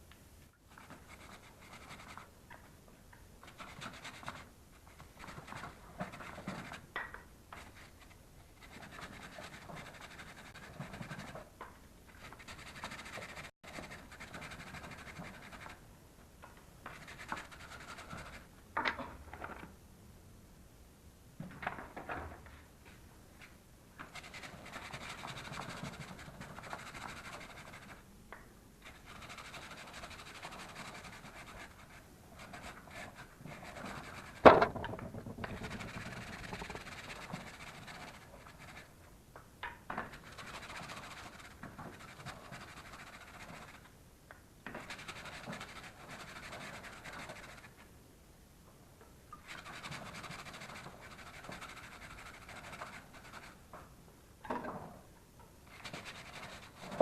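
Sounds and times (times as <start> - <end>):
brush scrubbing a chain: 28.9 - 34.4, 35.2 - 38.9, 40.1 - 43.8, 49.5 - 53.6
sharp knock: 34.4 - 36.8.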